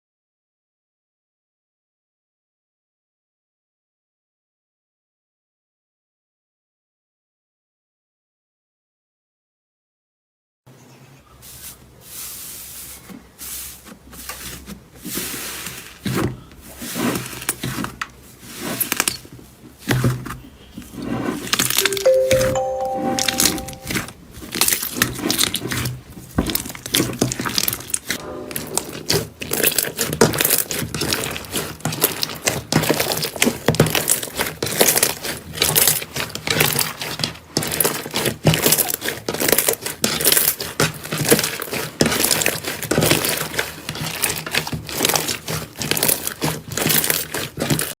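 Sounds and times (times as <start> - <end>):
slime crackling and squelching: 23.3 - 28.2, 29.0 - 48.0.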